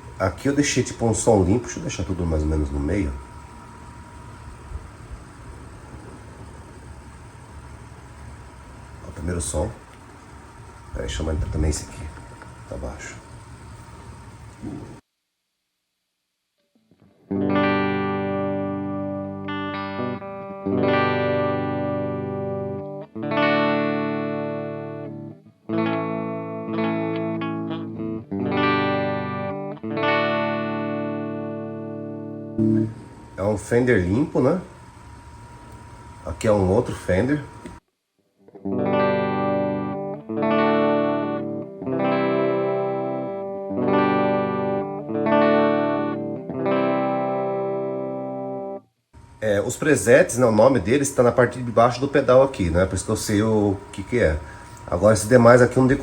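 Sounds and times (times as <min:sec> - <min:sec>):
electric guitar notes and chords: 0:16.8 - 0:33.4, 0:38.4 - 0:48.8.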